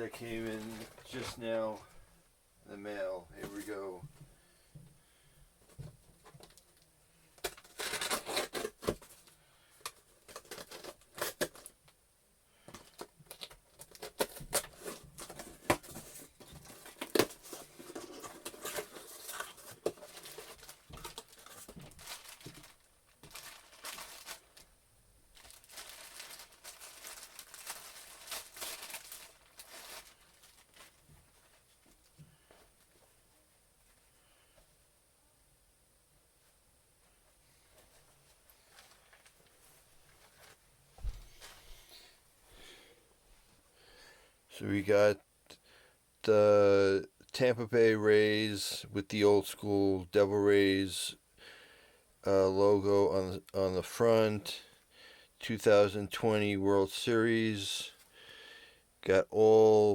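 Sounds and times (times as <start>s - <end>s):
packaging tearing and crinkling: 7.4s - 9.0s, 16.6s - 24.7s, 25.4s - 31.0s.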